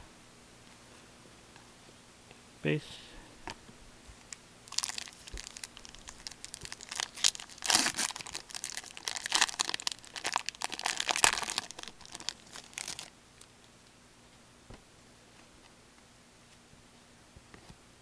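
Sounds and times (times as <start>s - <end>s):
foil wrapper crinkling and tearing: 4.7s - 13.1s.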